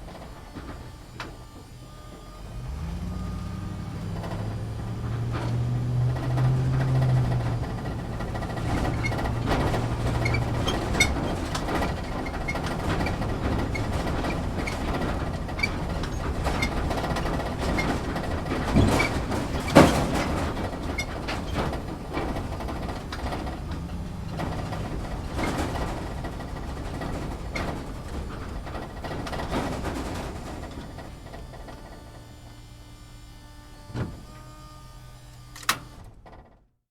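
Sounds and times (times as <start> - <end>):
engine and tyre rumble: 0.0 - 36.8
body rattles and knocks: 4.0 - 32.0.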